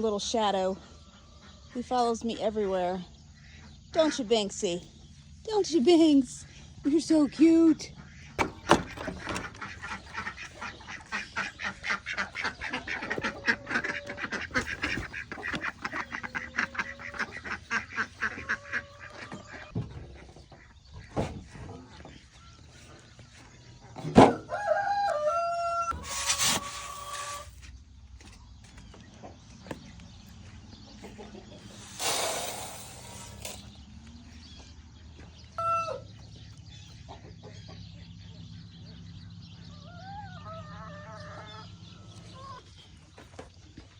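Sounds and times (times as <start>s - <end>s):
chickens clucking: 6.9s - 43.9s
ducks quacking: 7.1s - 19.7s.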